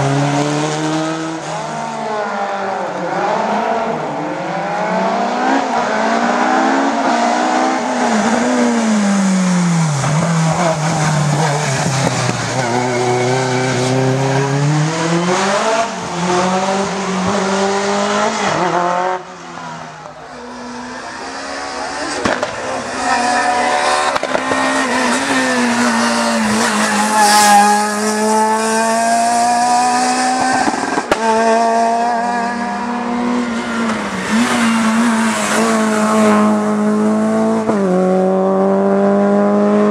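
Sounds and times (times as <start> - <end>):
racing car engines revving: 0.0 - 39.9
tyre squeal: 9.8 - 15.4, 22.8 - 28.5.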